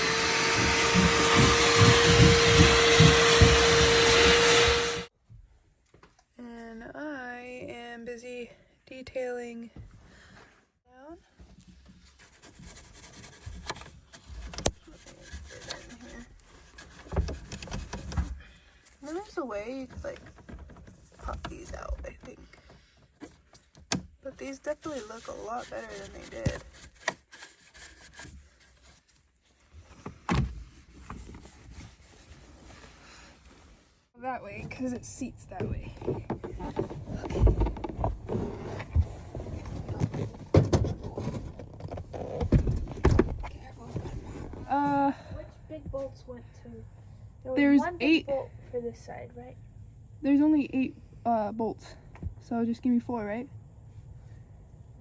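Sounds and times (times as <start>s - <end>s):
rubbing: 0.0s - 5.1s, 11.6s - 21.9s, 23.2s - 34.0s, 34.7s - 44.9s
dull knocks: 0.5s - 5.0s
rustling: 11.4s - 45.3s.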